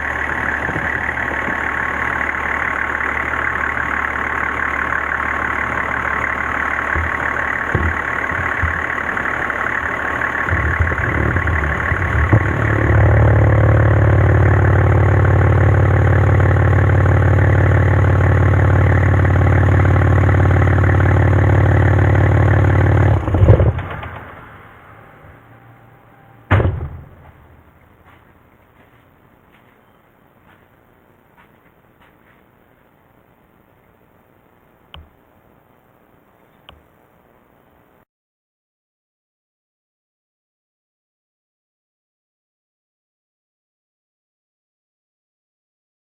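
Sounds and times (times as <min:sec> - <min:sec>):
diesel engine idling: 0:00.0 - 0:32.2.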